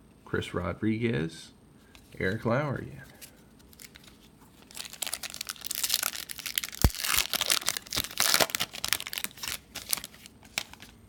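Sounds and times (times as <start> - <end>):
foil wrapper crinkling and tearing: 3.2 - 11.0.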